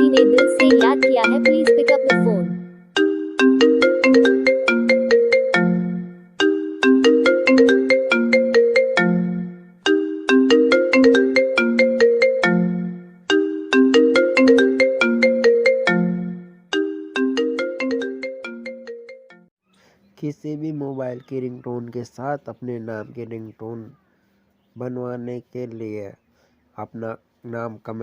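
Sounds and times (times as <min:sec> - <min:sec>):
mobile phone ringtone melody: 0:00.0 - 0:19.5.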